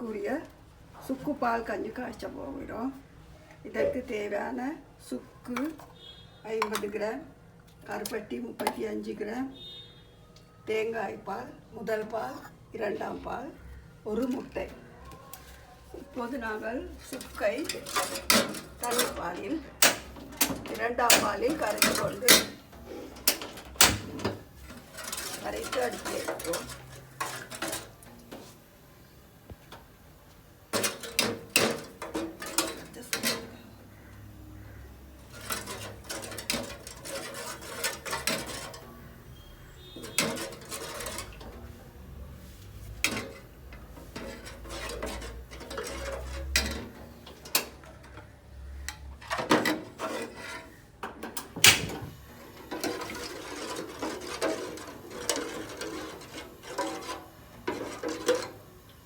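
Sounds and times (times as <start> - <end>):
utensils clinking and scraping: 15.4 - 28.7, 30.7 - 59.0.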